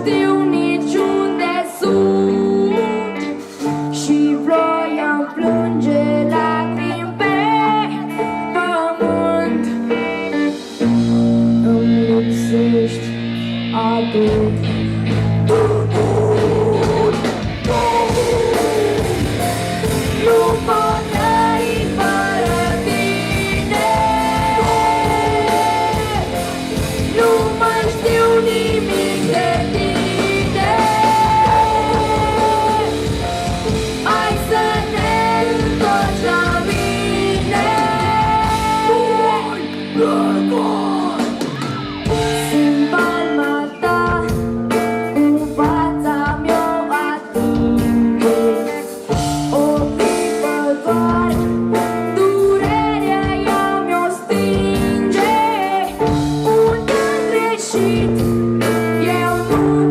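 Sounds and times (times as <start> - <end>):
drums: 0.0 - 59.9
bass guitar: 5.4 - 59.9
picked guitar notes: 9.2 - 46.0
metal band playing: 9.9 - 59.9.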